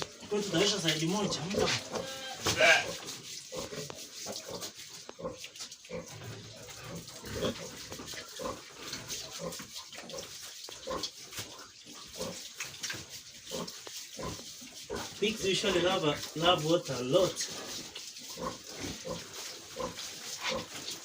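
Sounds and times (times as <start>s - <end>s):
pig grunting: 0.5s - 3.9s, 4.5s - 8.7s.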